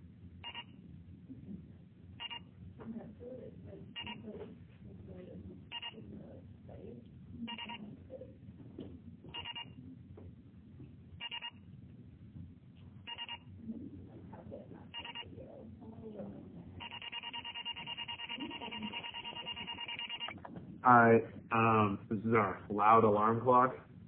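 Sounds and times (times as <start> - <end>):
alarm clock beeping: 0.5 - 0.7, 2.2 - 2.4, 4.0 - 4.2, 5.7 - 6.0, 7.5 - 7.8, 9.4 - 9.7, 11.2 - 11.6, 13.1 - 13.4, 15.0 - 15.3, 16.8 - 20.4.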